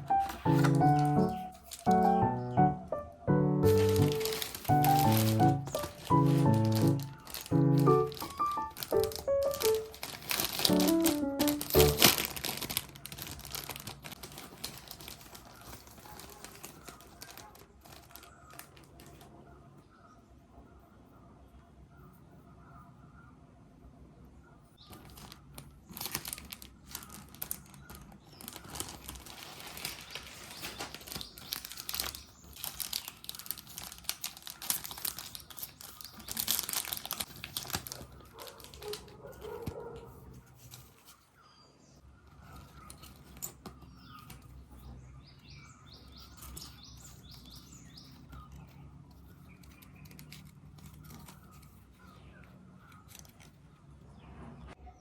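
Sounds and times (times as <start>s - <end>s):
packaging crinkling and tearing: 0.0s - 2.4s, 3.6s - 19.4s, 24.8s - 41.2s, 52.8s - 53.6s
handling noises: 0.0s - 19.4s, 24.8s - 41.4s, 42.1s - 54.0s.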